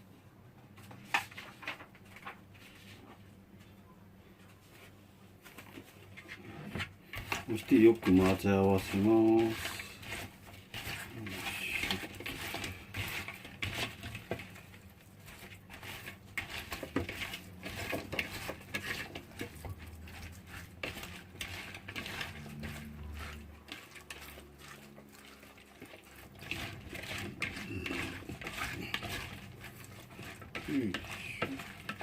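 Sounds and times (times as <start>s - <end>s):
food stirred in liquid: 5.7s - 32.0s
utensil clinking and scraping container: 7.1s - 32.0s.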